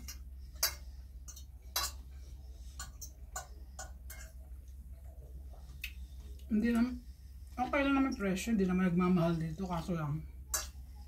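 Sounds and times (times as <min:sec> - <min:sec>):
soft eating clicks and taps: 0:00.0 - 0:06.9
low steady hum: 0:00.0 - 0:11.0.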